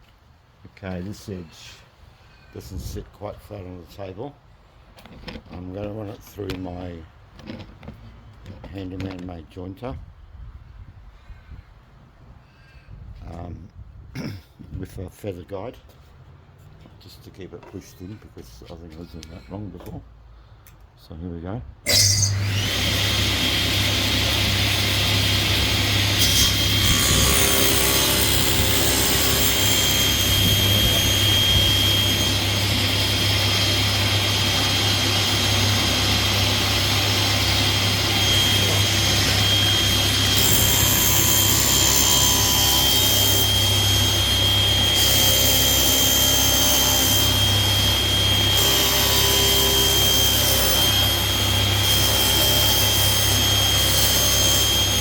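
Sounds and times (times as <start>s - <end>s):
saw blade cutting wood: 21.9s - 55.0s
table saw whining: 21.9s - 55.0s.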